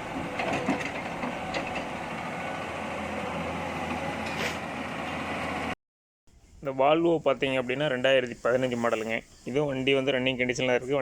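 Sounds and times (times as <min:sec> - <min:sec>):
engine humming: 0:00.0 - 0:05.8.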